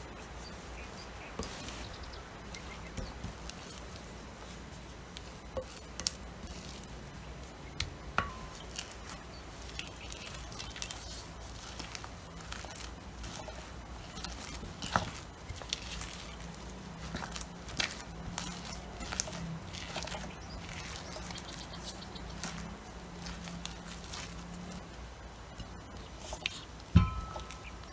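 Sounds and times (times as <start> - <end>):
batter squishing: 0.0 - 27.9
utensil tapping a bowl: 8.1 - 8.9, 27.0 - 27.9.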